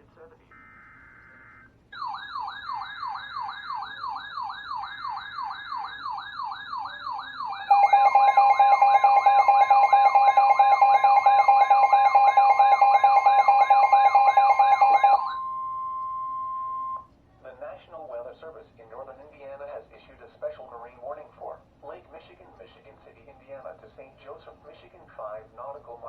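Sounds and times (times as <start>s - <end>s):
sweeping siren-like tone: 2.0s - 17.1s
two-tone attention signal: 7.7s - 17.1s.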